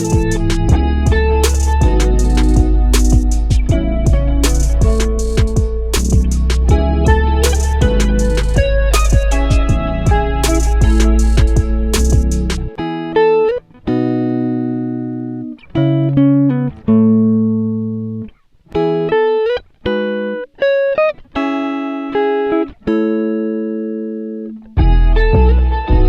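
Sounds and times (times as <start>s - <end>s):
plucked guitar: 0.0s - 26.0s.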